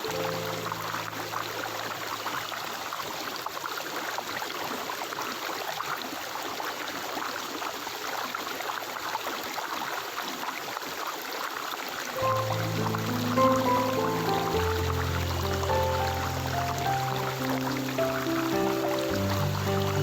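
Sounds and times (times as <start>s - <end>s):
soft background music: 0.0s - 2.8s, 12.2s - 20.0s
stream water rushing: 0.0s - 10.3s, 11.8s - 20.0s.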